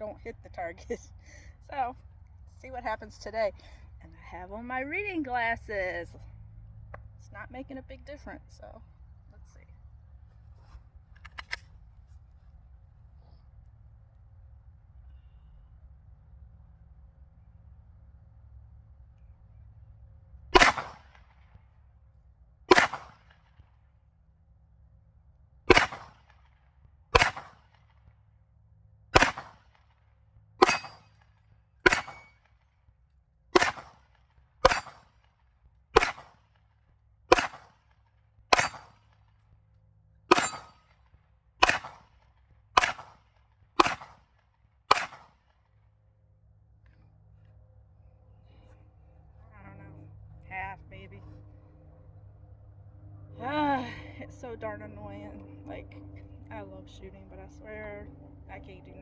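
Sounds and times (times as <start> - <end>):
pistol shots: 20.6 - 21.2, 22.7 - 23.3, 25.7 - 26.3, 27.2 - 27.7, 29.2 - 29.8, 30.6 - 31.1, 31.8 - 32.4, 33.6 - 35.1, 36.0 - 36.4, 37.3 - 37.8, 38.5 - 39.0, 40.3 - 40.8, 41.6 - 42.1, 42.8 - 43.2, 43.8 - 44.2, 44.9 - 45.4.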